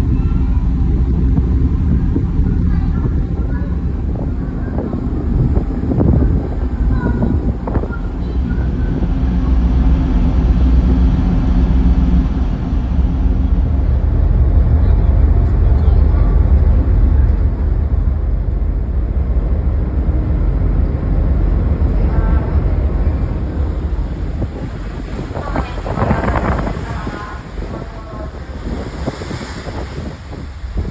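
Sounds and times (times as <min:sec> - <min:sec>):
faint voices: 0:00.0 - 0:13.0, 0:21.1 - 0:30.9
ship engines rumbling: 0:00.0 - 0:30.9
wind on microphone: 0:00.0 - 0:30.9.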